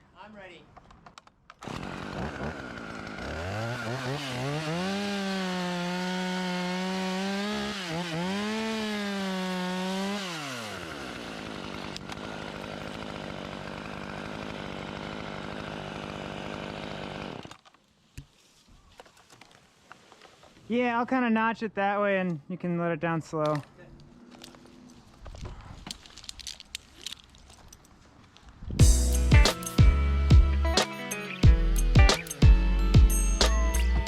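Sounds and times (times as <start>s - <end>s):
chainsaw cutting wood: 1.5s - 17.7s.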